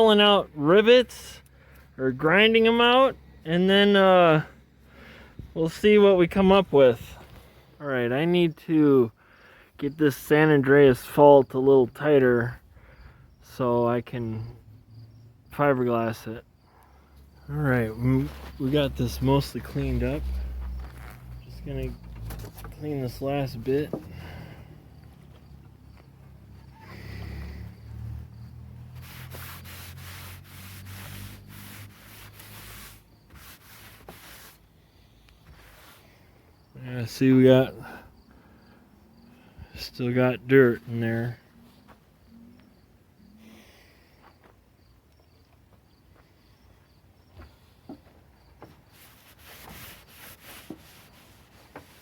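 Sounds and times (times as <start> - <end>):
rough rubbing strokes: 17.4 - 24.6, 26.6 - 34.8, 35.4 - 36.3, 48.6 - 52.0.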